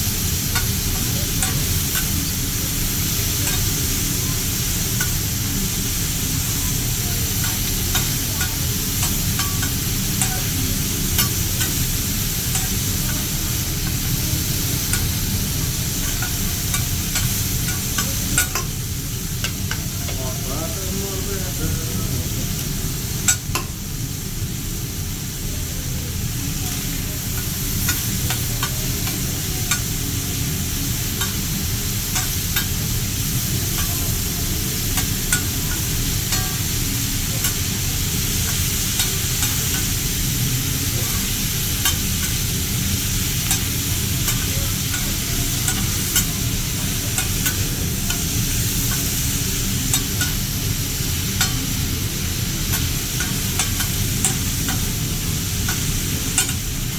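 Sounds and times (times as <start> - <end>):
food sizzling on a griddle: 0.0 - 56.9
metal spatulas tapping steel: 0.5 - 2.3, 3.2 - 3.9, 7.3 - 18.8, 27.4 - 40.0, 43.4 - 50.5, 51.3 - 51.9, 52.6 - 56.7.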